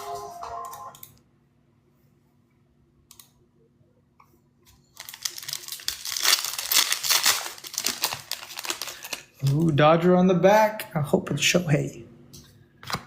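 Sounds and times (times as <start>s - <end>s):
foil wrapper crinkling and tearing: 4.9s - 9.8s.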